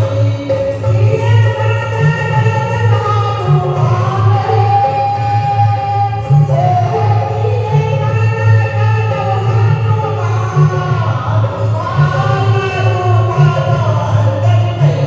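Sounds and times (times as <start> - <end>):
person singing devotional song: 0.0 - 15.0.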